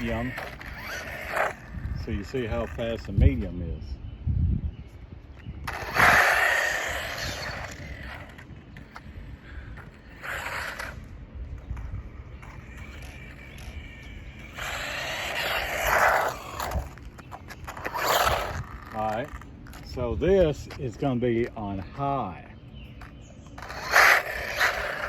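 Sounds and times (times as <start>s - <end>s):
toy car motor whine: 0.0s - 2.7s, 5.7s - 8.4s, 12.7s - 16.9s, 17.7s - 19.1s, 23.6s - 25.0s.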